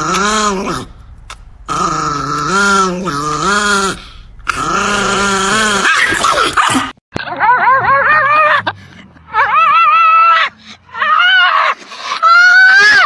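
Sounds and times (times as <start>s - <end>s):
dog whining and yowling: 9.3s - 13.0s.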